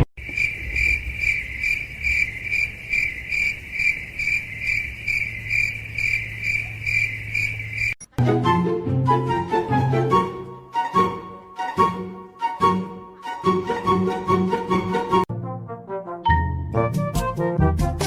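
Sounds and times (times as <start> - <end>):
cricket chirping: 0.2 - 8.1
music: 8.1 - 18.0.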